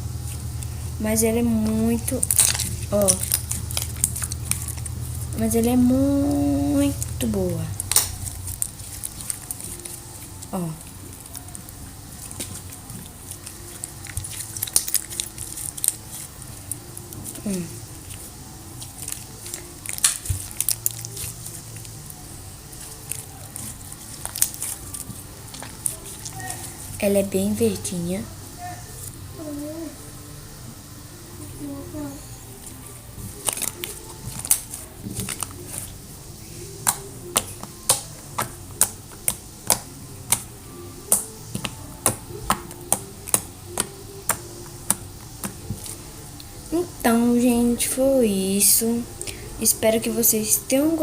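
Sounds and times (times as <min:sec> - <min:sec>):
slime squished in hands: 0:01.6 - 0:27.1, 0:32.6 - 0:46.6
small wet clicks and pops: 0:22.7 - 0:26.6, 0:36.8 - 0:40.5.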